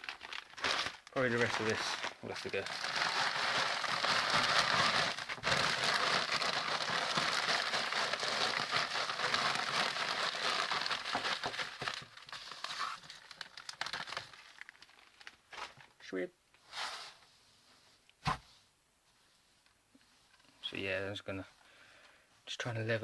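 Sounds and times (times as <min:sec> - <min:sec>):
wood shavings poured rustling: 0:00.0 - 0:04.4
bag crinkling: 0:00.0 - 0:15.9.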